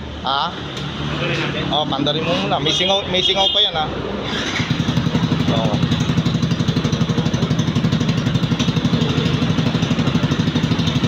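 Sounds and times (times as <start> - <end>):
motorcycle engine idling: 4.4 - 11.0.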